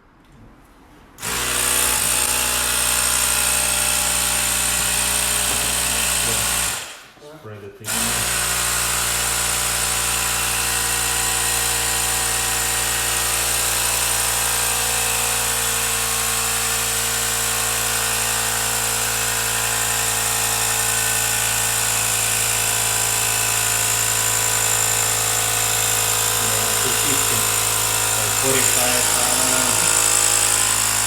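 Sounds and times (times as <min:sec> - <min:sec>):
battery inflator pump humming: 0:14.9 - 0:31.0.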